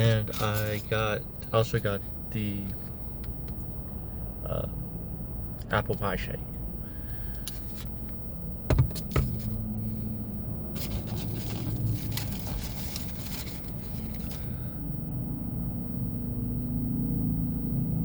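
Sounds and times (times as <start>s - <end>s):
low hum of car: 0.0s - 18.0s
packaging rustling: 0.3s - 0.9s, 8.7s - 9.6s, 10.6s - 14.6s
sharp knocks: 8.7s - 9.5s.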